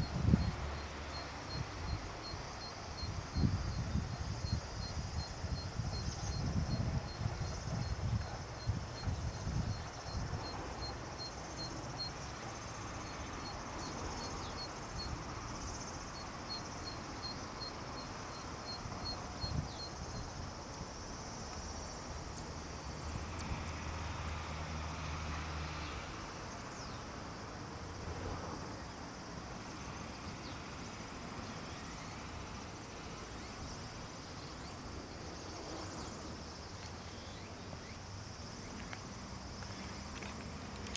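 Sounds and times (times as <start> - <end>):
steady hiss and low rumble: 0.0 - 25.0
insect chirping: 0.0 - 40.9.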